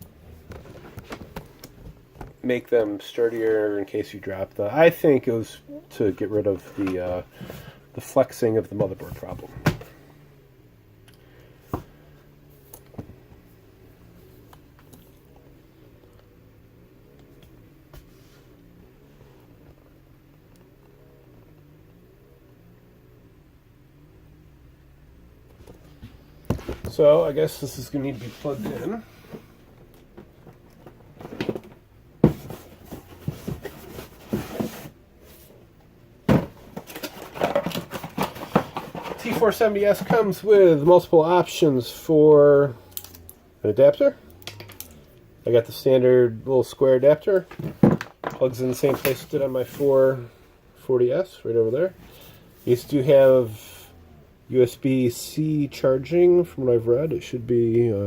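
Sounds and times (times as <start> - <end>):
rustling and light clatter: 0.0 - 3.6, 25.5 - 40.5
steady low hum: 0.0 - 58.0.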